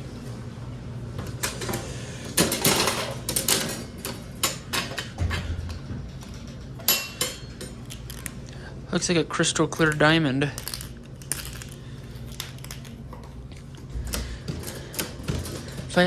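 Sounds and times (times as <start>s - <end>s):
vending machine clicks and clunks: 1.3s - 7.8s.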